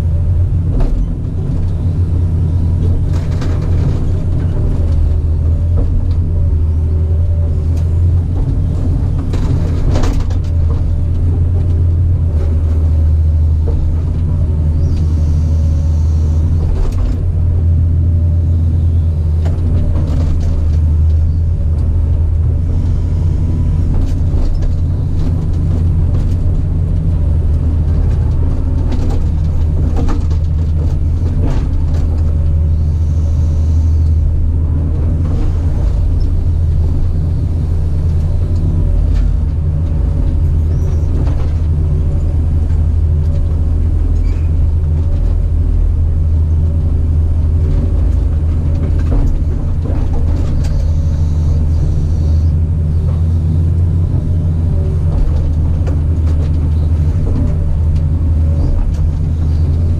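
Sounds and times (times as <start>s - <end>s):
diesel engine running: 0.0s - 59.9s
knocks and clatter: 2.8s - 6.6s, 8.2s - 14.4s, 19.4s - 22.3s, 23.8s - 32.7s, 47.5s - 51.1s, 53.0s - 59.9s.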